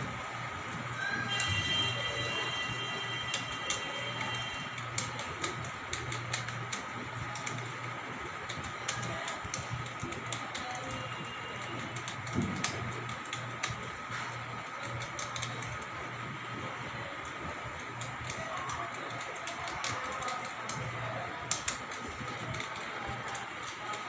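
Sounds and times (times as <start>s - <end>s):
background hum and hiss: 0.0s - 24.0s
keyboard key clicks: 3.3s - 7.7s, 11.7s - 13.9s, 14.7s - 15.8s, 21.5s - 24.0s.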